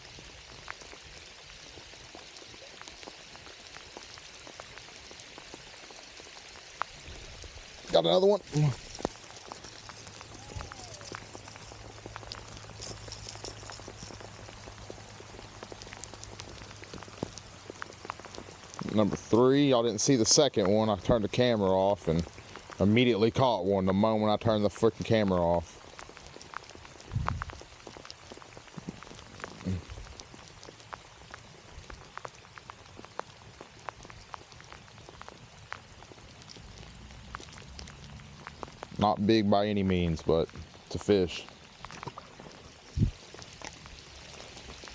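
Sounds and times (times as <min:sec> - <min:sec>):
rain pattering: 0:00.0 - 0:44.9
dull low thumps: 0:27.1 - 0:27.6, 0:42.9 - 0:43.2.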